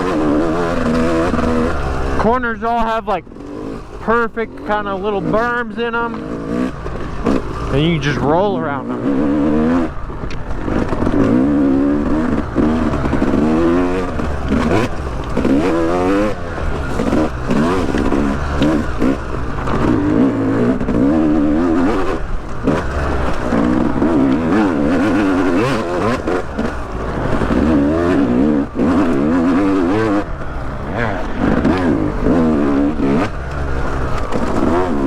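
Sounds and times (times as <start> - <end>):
dirt bike engine revving: 0.0 - 35.0.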